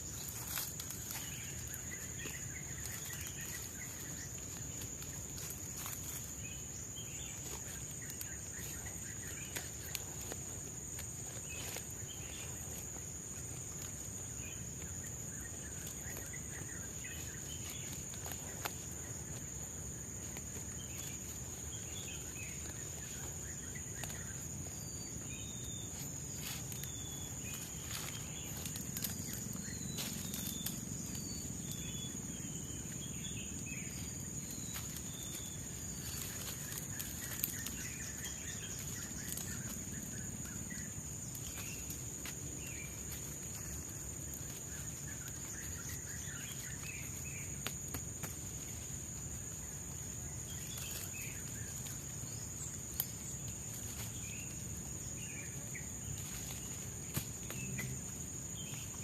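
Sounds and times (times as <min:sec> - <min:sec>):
insects droning: 0:00.0 - 0:59.0
birds chirping and whistling: 0:20.2 - 0:42.0.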